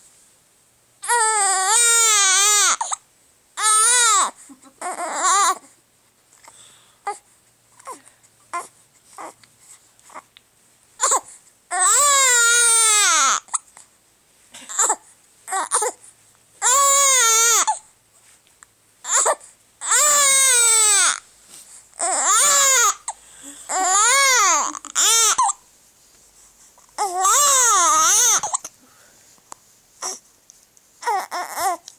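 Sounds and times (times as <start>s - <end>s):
baby crying: 1.0s - 3.0s, 3.6s - 5.7s, 7.8s - 9.4s, 11.0s - 13.6s, 14.7s - 16.0s, 16.6s - 17.8s, 19.0s - 21.2s, 22.0s - 25.6s, 27.0s - 28.7s, 30.0s - 30.2s, 31.0s - 31.9s
baby hiccups: 14.6s - 16.0s, 23.8s - 25.6s, 27.0s - 28.8s.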